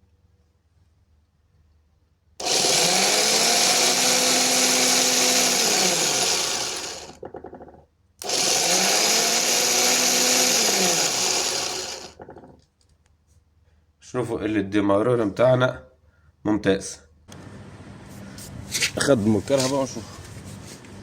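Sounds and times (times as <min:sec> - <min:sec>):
starter motor whining: 0:02.4 - 0:12.6.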